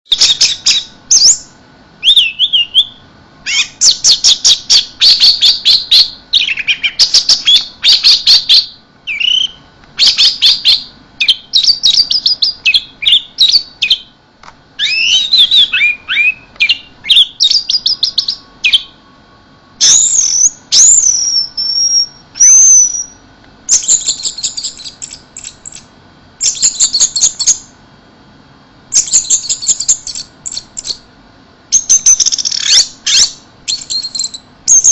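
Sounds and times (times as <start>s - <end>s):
thrush singing trills and whistles: 0.1s - 14.2s, 14.8s - 27.7s, 28.9s - 31.1s, 31.7s - 34.9s.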